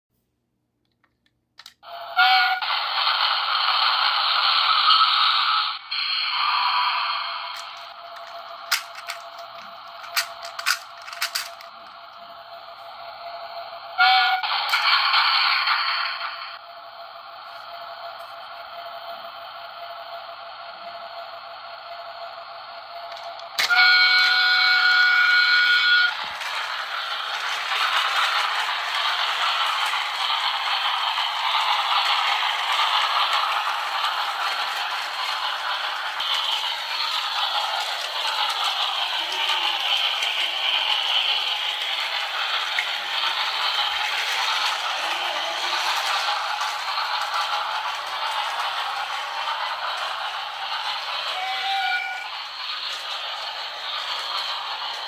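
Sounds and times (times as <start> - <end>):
tinny toy train sound: 1.0 - 55.0
electronic locomotive horn: 1.9 - 2.7, 13.9 - 14.8, 23.6 - 26.3, 51.3 - 52.3.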